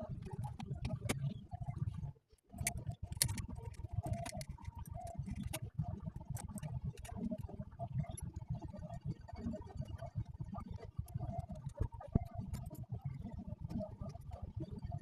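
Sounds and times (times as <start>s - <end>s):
small clicks and taps on metal parts: 0.2s - 1.3s, 2.4s - 5.6s, 6.3s - 7.2s.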